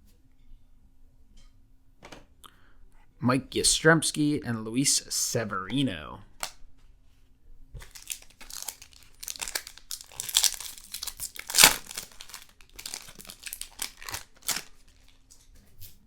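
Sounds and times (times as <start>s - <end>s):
foil wrapper crinkling: 7.8s - 15.5s
sharp loud wrapper rip: 7.9s - 12.4s.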